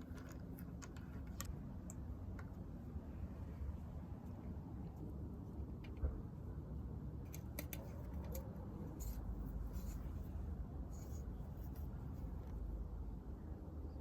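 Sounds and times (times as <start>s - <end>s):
small scraping sounds: 0.0s - 2.4s, 7.3s - 12.7s
low steady hum: 0.0s - 14.0s.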